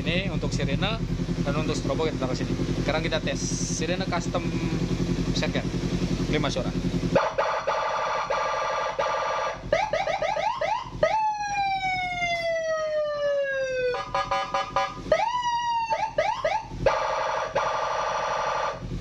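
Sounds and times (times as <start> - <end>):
multi-tone motorcycle siren: 7.1 - 19.0.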